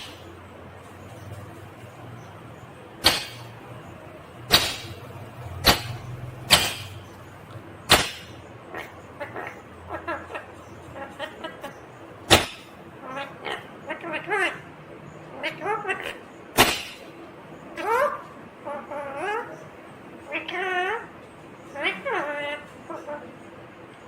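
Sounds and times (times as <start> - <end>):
parakeet chattering calls: 1.0 - 14.7, 15.4 - 23.3
parakeet screeching: 7.9 - 11.7, 21.7 - 23.2.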